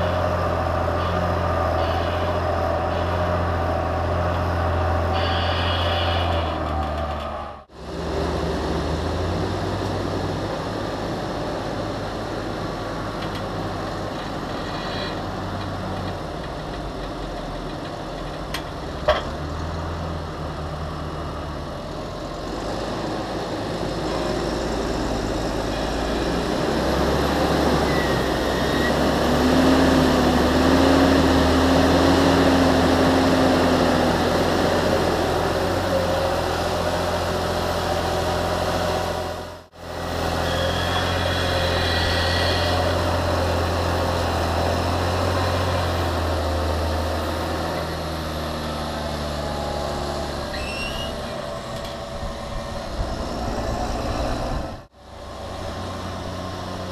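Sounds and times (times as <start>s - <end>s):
tractor diesel engine working: 0.0s - 56.9s.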